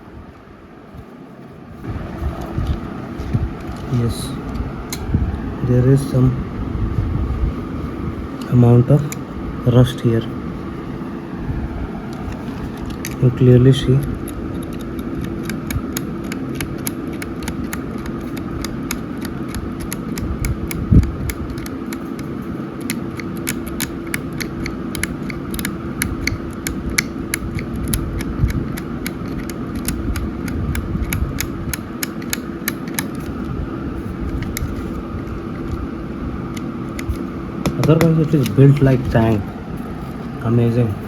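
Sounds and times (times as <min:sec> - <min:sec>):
steady low hum: 0:00.0 - 0:41.0
small clicks and light scratching: 0:13.9 - 0:35.8, 0:36.5 - 0:39.3.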